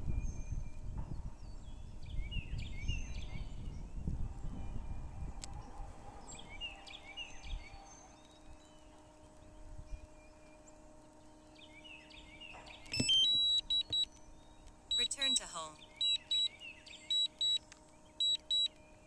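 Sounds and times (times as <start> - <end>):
wind buffeting microphone: 0.0 - 7.9
faint steady hum: 0.0 - 19.0
small birds chirping: 0.0 - 19.0
loud electronic tone: 14.9 - 16.5.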